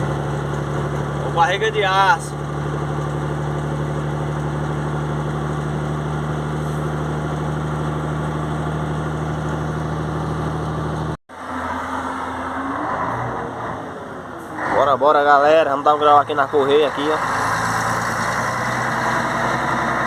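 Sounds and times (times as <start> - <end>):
truck diesel engine droning: 0.0 - 20.0.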